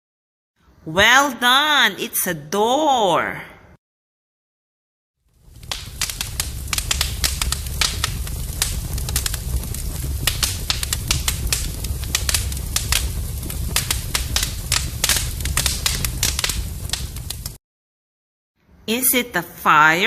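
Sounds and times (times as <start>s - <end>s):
fire crackling: 5.2s - 17.6s.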